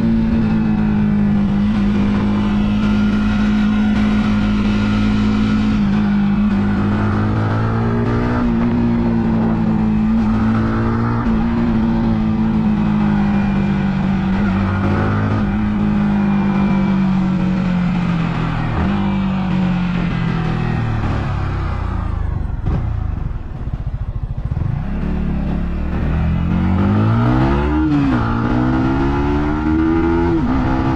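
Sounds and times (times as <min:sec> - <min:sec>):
motorcycle engine running: 0:00.0 - 0:30.9.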